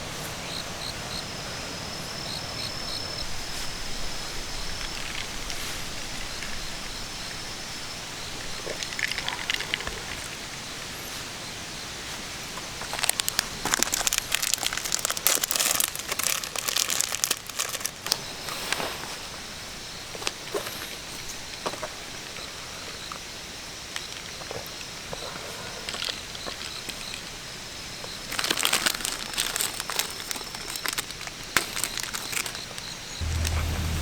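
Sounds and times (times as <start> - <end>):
dry leaves and twigs crackling: 12.8 - 18.2, 28.1 - 34.0.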